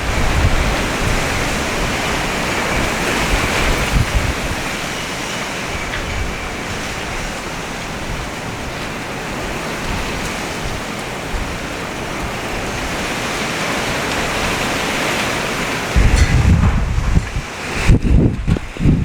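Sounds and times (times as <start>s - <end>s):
strong wind rushing: 15.9s - 19.0s.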